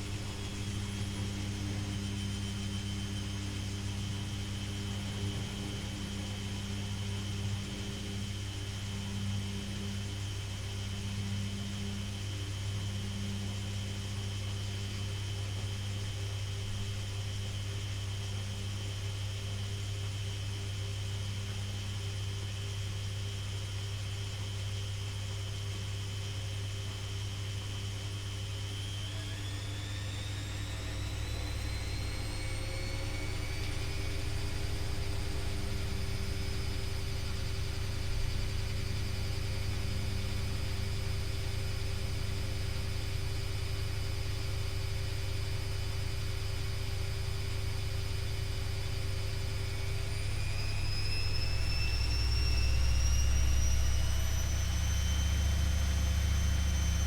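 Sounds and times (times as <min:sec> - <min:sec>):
washing machine motor whine: 0:00.0 - 0:18.9, 0:27.5 - 0:57.0
low hum: 0:30.7 - 0:57.0.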